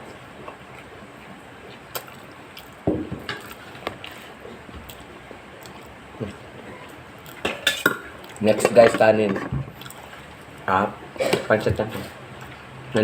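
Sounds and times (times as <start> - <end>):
wet chewing and mouth noises: 0.3 - 2.8, 3.4 - 7.5, 9.7 - 10.6.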